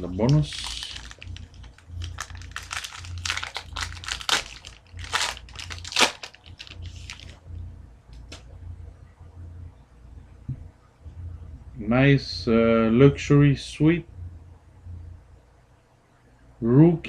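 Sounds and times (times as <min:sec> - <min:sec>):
foil wrapper crinkling: 0:00.0 - 0:07.4.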